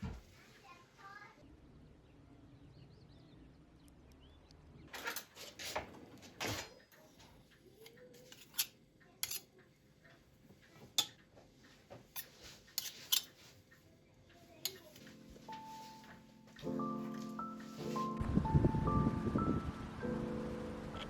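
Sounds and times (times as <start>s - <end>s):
utensils clinking against dishes: 5.0s - 9.6s, 10.7s - 11.3s, 12.1s - 13.6s, 14.6s - 18.1s.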